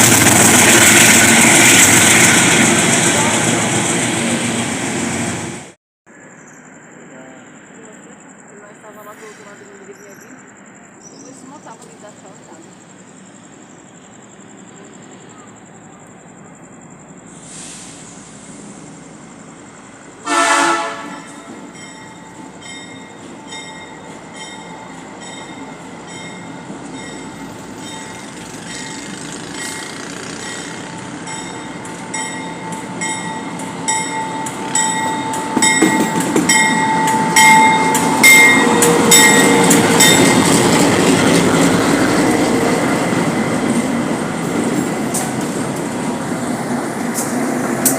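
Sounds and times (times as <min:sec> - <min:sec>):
train rumble passing: 0:00.0 - 0:47.9
train horn blast: 0:20.2 - 0:21.6, 0:37.6 - 0:40.4.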